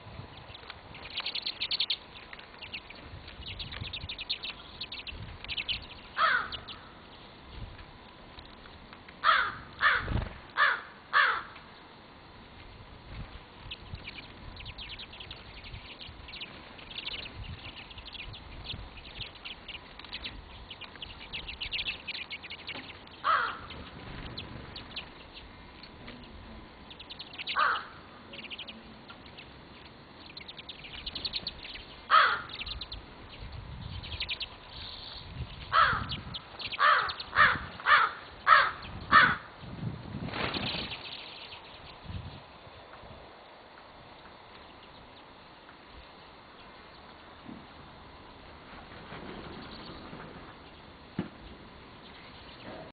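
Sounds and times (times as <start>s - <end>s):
small birds chirping faintly: 0.0s - 52.9s
crow cawing: 6.2s - 6.8s, 9.2s - 11.6s, 23.2s - 23.7s, 27.6s - 28.1s, 32.1s - 32.6s, 35.7s - 36.1s, 36.8s - 39.5s.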